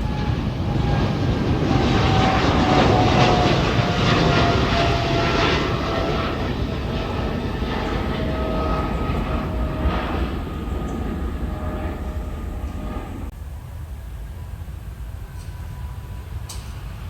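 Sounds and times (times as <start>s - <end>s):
falling engine whine: 0.0s - 13.6s
jet engines passing: 0.0s - 17.0s.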